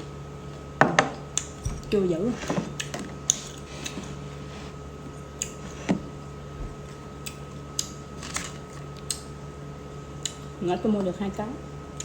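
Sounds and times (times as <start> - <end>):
steady low hum: 0.0 - 12.0
chewing clicks: 5.3 - 5.6, 7.2 - 8.0, 8.8 - 9.3, 10.2 - 10.5.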